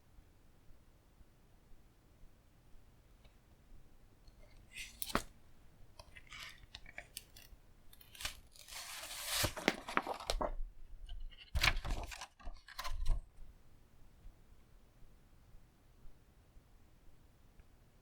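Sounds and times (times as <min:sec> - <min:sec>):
packaging tearing and rustling: 0:06.2 - 0:10.5, 0:11.4 - 0:13.1.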